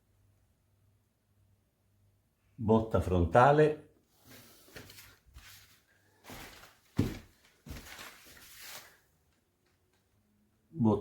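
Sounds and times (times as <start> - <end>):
handling noise: 4.8 - 8.8.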